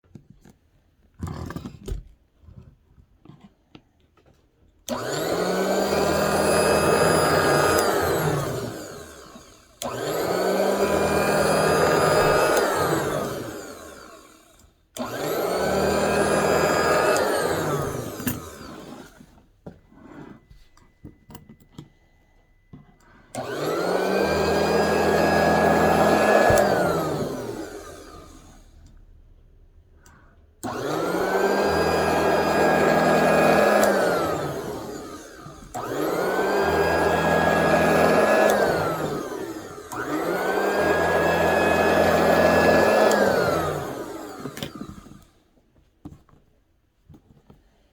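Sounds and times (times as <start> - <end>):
electric cutting machine motor whining: 4.9 - 19.3, 23.3 - 28.7, 30.6 - 45.2.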